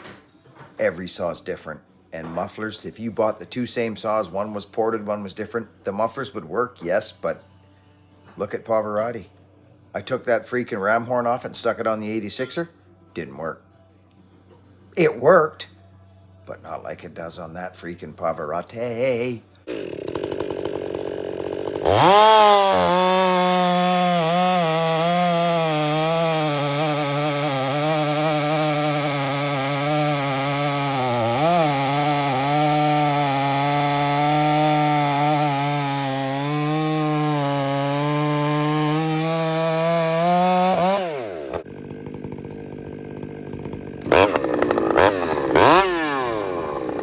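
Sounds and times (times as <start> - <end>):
chainsaw cutting at full speed: 19.6 - 47.0.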